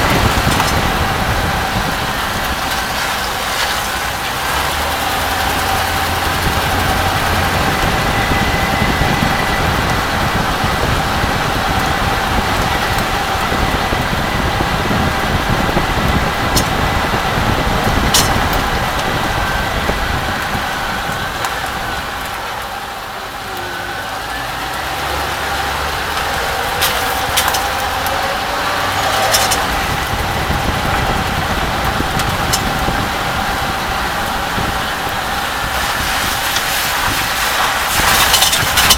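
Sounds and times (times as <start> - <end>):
truck running on road: 0.0 - 38.9.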